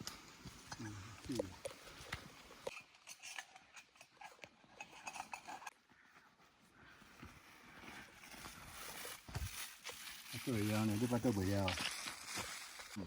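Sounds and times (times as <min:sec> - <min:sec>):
footsteps on dirt trail: 0:05.9 - 0:13.0.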